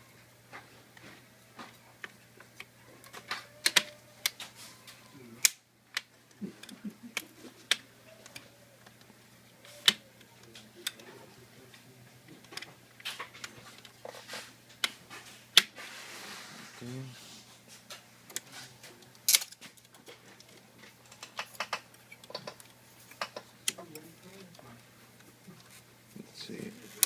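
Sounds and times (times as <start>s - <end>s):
plastic clips clicking: 3.2s - 4.4s, 19.0s - 24.6s.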